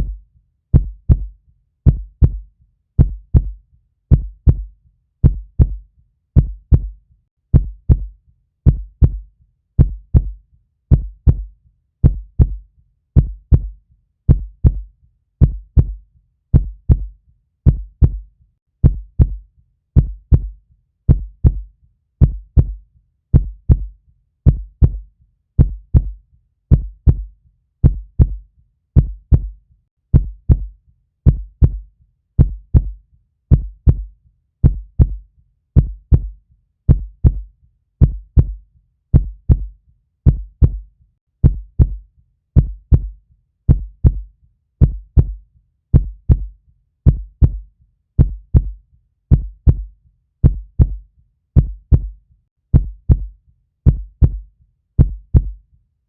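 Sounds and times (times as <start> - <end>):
heartbeat thumps: 0.0 - 5.8, 6.4 - 12.6, 13.2 - 19.4, 20.0 - 28.4, 29.0 - 35.2, 35.8 - 42.0, 42.6 - 51.0, 51.6 - 55.6.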